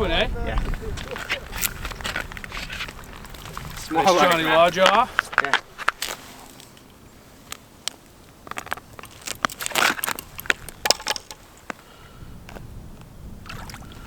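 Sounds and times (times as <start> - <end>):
sharp clicks and crunches: 7.5 - 11.4.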